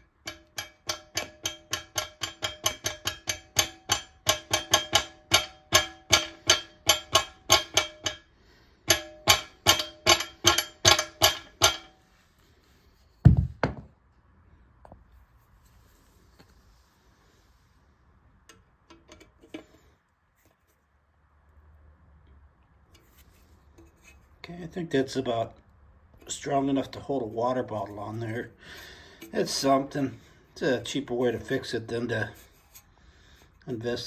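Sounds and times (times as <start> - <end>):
dull thud: 13.2 - 13.9.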